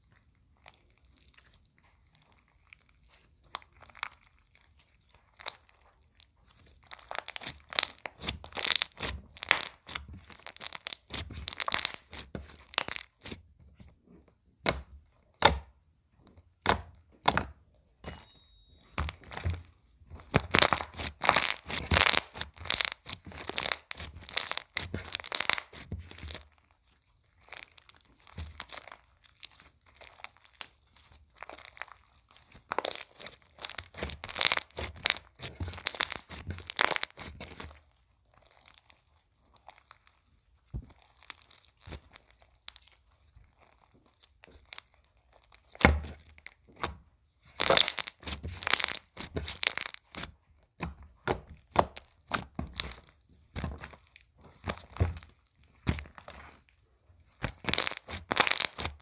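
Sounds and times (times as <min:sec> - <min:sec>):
slime squished by hand popping: 0:07.0 - 0:13.4, 0:19.0 - 0:26.4, 0:32.8 - 0:37.6, 0:47.6 - 0:56.2.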